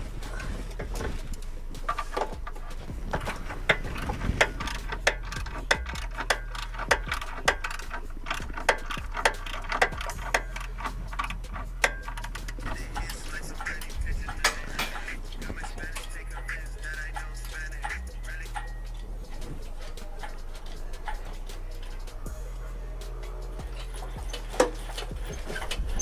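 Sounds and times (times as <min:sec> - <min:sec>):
hand ratchet clicking: 0:00.0 - 0:26.0
low steady hum: 0:00.0 - 0:26.0.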